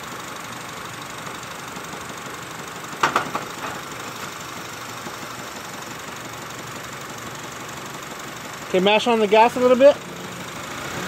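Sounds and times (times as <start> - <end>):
car engine idling with knock: 0.0 - 11.0
sharp engine clunk: 3.0 - 3.8.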